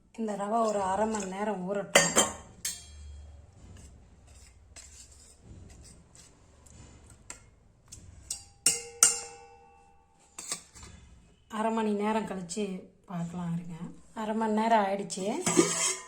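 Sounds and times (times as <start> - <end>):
metal utensils clinking: 2.0 - 3.4, 7.3 - 10.9, 15.2 - 16.0.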